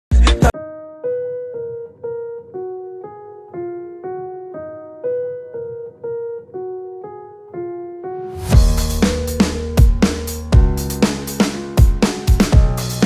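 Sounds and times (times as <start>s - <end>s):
slow piano-like keyboard melody: 0.4s - 13.0s.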